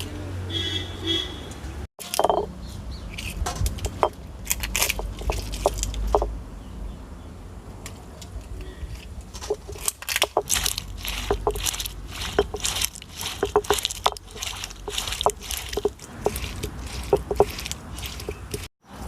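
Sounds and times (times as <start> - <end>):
food crunching and scraping: 3.2 - 6.3, 8.8 - 18.7.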